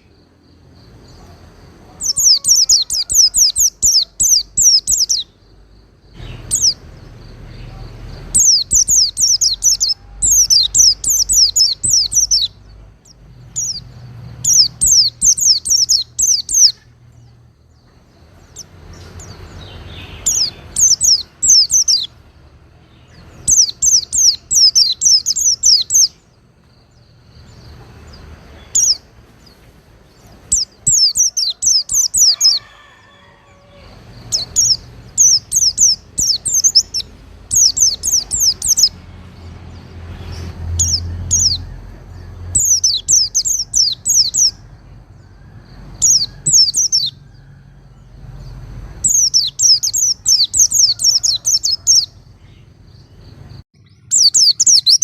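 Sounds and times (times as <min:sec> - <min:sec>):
bird twittering: 0:02.0 - 0:05.4, 0:06.2 - 0:17.3, 0:18.5 - 0:22.2, 0:23.0 - 0:26.3, 0:28.5 - 0:29.6, 0:30.2 - 0:39.0, 0:40.1 - 0:44.6, 0:48.9 - 0:52.6, 0:53.8 - 0:55.0.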